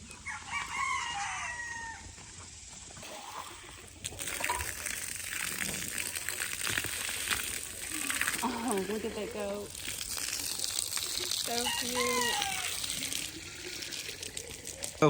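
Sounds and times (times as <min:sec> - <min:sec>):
rooster crowing: 0:00.2 - 0:02.2, 0:11.5 - 0:13.2
water running and splashing: 0:02.1 - 0:15.0.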